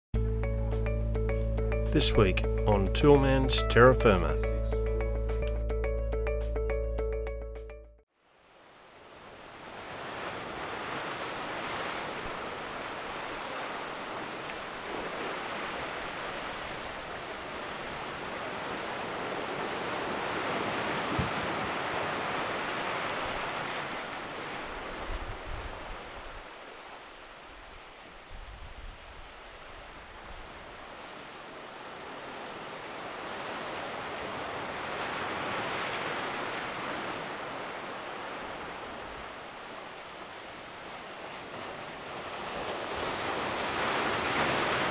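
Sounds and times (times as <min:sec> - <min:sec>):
ocean surf washing on shore: 0:08.3 - 0:44.9
wind buffeting microphone: 0:24.7 - 0:26.5.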